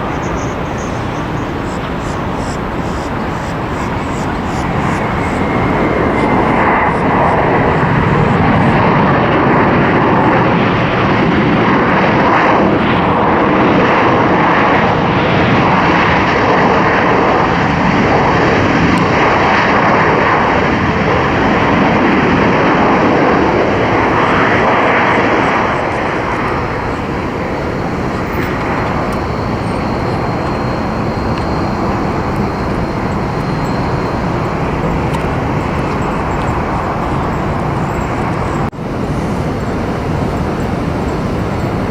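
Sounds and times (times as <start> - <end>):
jet engines roaring: 0.0 - 41.9.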